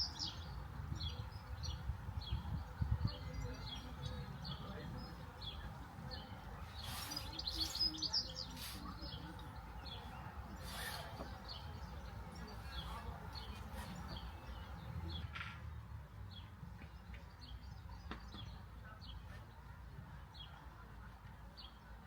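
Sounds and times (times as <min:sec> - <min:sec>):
small birds chirping: 0:00.0 - 0:15.4.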